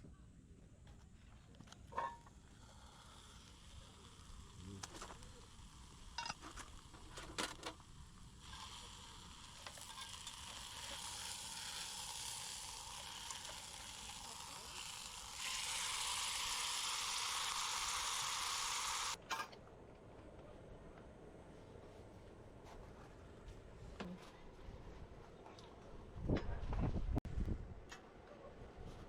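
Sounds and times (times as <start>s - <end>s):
food sizzling in a pan: 2.6s - 19.2s.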